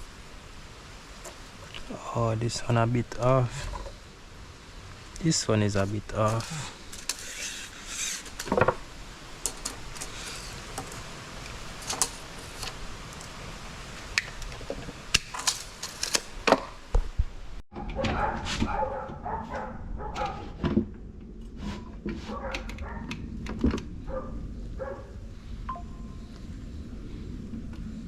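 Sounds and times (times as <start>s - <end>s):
plywood boards knocking and clattering: 8.4s - 8.8s.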